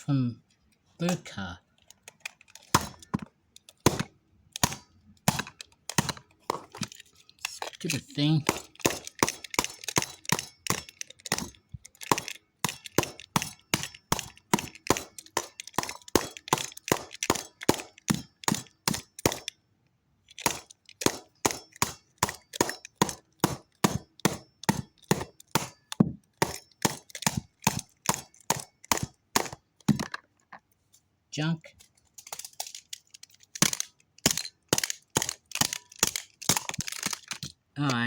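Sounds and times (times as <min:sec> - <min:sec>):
pencil tapping on hard object: 0:08.4 - 0:19.4.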